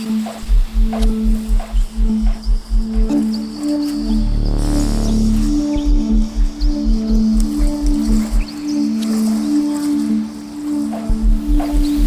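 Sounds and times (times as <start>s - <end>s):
pulsing bass beat: 0.4s - 8.6s, 11.0s - 12.0s
low held electronic tones: 0.4s - 12.0s
high chirping glides: 0.6s - 9.6s.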